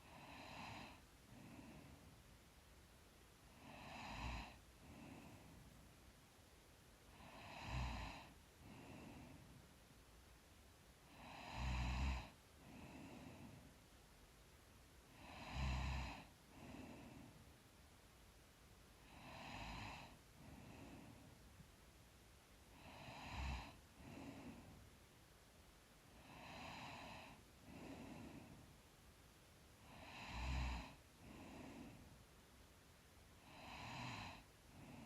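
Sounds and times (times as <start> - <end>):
woman breathing and snoring: 0.0 - 2.3, 3.4 - 6.0, 7.0 - 9.8, 11.0 - 14.0, 15.0 - 17.7, 18.9 - 21.8, 22.5 - 25.1, 26.0 - 29.0, 29.6 - 32.4, 33.3 - 35.0.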